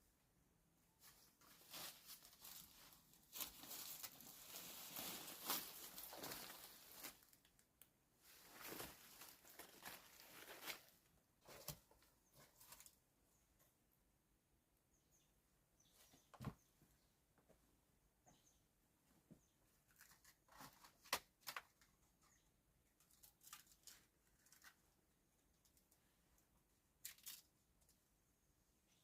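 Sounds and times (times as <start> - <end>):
rustling and crinkling: 1.0 - 13.1, 19.0 - 28.1.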